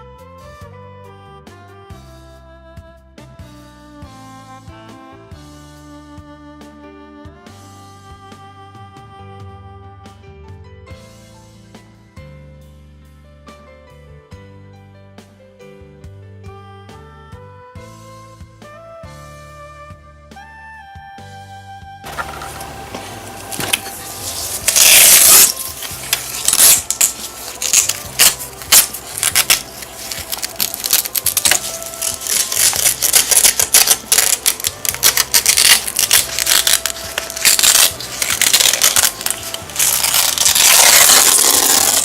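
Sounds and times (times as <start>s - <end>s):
rustling: 22.1s - 42.0s.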